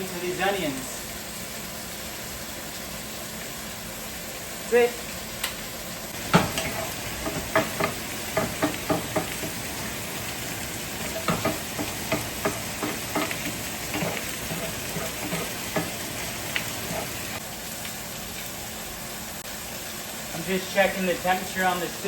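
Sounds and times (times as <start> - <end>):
onions sizzling in a pan: 0.0 - 22.0
utensil scraping a pan: 6.2 - 17.4.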